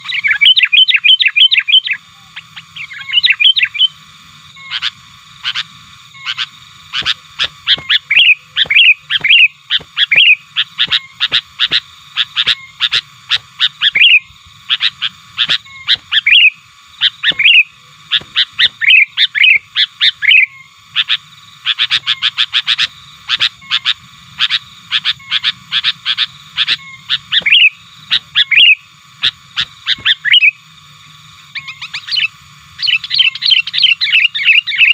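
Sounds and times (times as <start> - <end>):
bulbul calling: 0.0 - 34.9.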